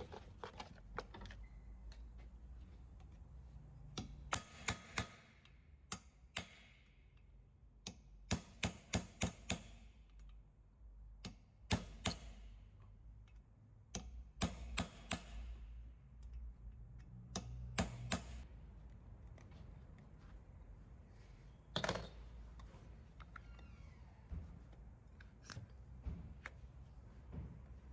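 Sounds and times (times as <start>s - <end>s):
metallic tool taps and knocks: 21.7s - 22.3s.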